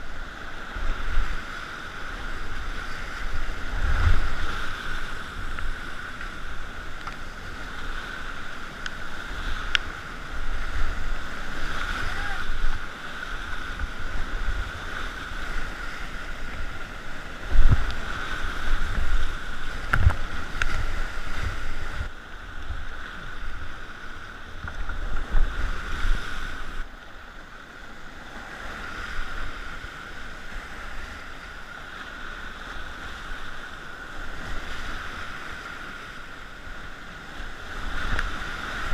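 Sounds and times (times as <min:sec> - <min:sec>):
whitewater rapids rushing: 0:00.0 - 0:38.9
wind buffeting microphone: 0:02.3 - 0:23.8.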